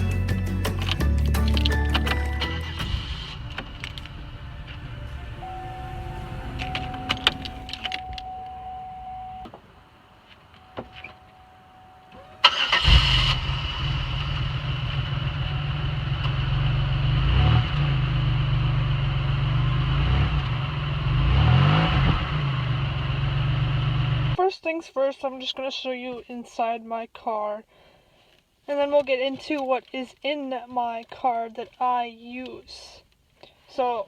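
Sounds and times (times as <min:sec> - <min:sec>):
car engine starting and idling: 0:00.0 - 0:24.4
faint steady tone: 0:03.3 - 0:12.5.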